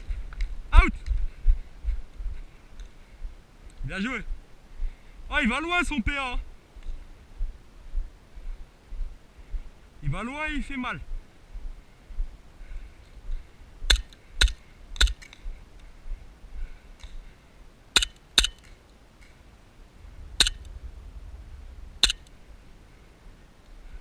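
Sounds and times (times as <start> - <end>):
airsoft gun shots: 22.0 - 22.3.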